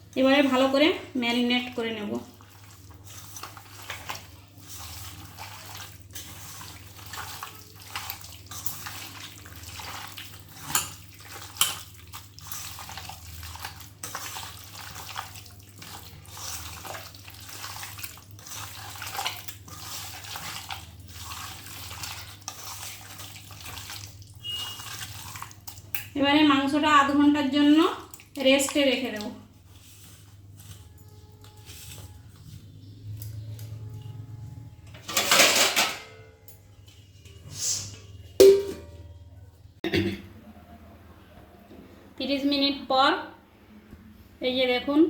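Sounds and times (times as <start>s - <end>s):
wet squishing of meat by hand: 1.9s - 26.2s, 27.7s - 34.5s.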